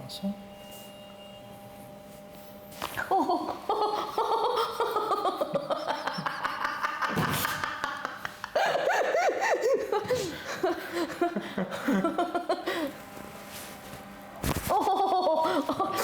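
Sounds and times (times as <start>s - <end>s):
person laughing and giggling: 3.0s - 13.0s, 14.6s - 16.0s.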